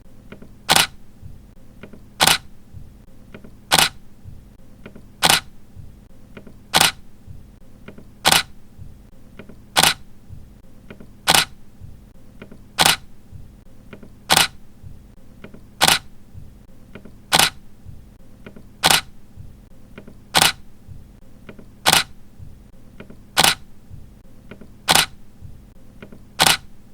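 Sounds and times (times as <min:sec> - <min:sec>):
camera shutter clicking: 0:00.7 - 0:01.0, 0:02.2 - 0:02.5, 0:03.7 - 0:04.0, 0:05.2 - 0:05.5, 0:06.7 - 0:07.0, 0:08.2 - 0:08.5, 0:09.8 - 0:10.0, 0:11.2 - 0:11.6, 0:12.8 - 0:13.1, 0:14.3 - 0:14.6, 0:15.8 - 0:16.1, 0:17.3 - 0:17.6, 0:18.8 - 0:19.1, 0:20.3 - 0:20.6, 0:21.8 - 0:22.1, 0:23.4 - 0:23.6, 0:24.9 - 0:25.2, 0:26.4 - 0:26.7.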